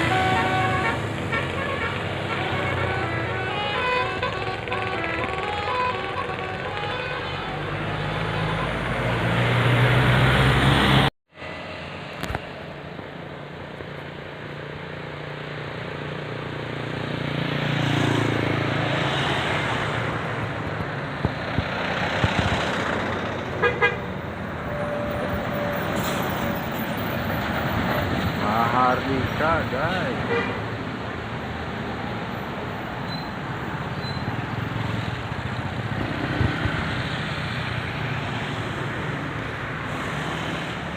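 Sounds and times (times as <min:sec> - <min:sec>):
bus horn tooting: 0:00.0 - 0:09.3, 0:23.6 - 0:27.7, 0:28.4 - 0:30.7
road traffic: 0:00.0 - 0:40.9.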